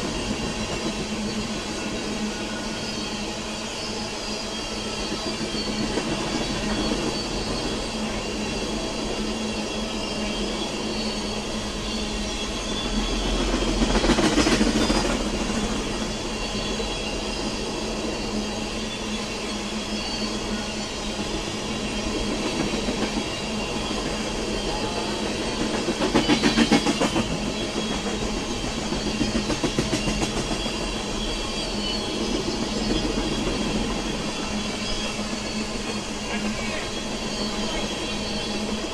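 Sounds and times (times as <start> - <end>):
train wheels clattering over rail joints: 25.6 - 30.8.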